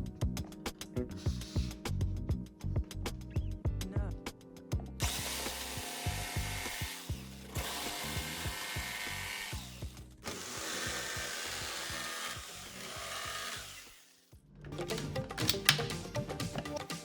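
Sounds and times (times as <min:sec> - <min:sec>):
background music: 0:00.0 - 0:13.5, 0:14.3 - 0:17.0
jigsaw cutting wood: 0:05.0 - 0:14.3.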